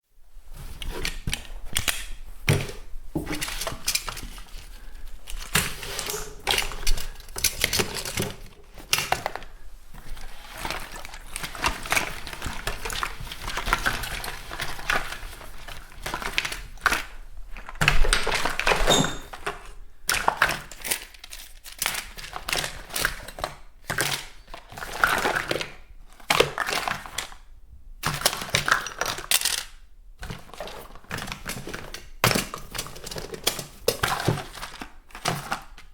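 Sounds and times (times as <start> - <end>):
packets rustling: 0.5 - 23.3
bottles and packets clattering: 2.5 - 25.8, 28.2 - 35.9.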